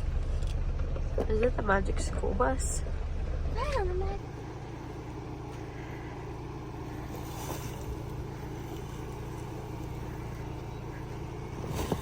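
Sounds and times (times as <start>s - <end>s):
engine and road hum inside car: 0.0s - 12.0s.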